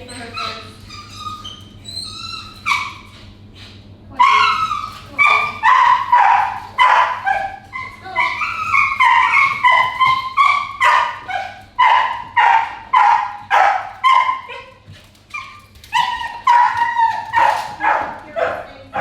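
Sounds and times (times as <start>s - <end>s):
dog barking in high yaps: 4.2s - 19.0s.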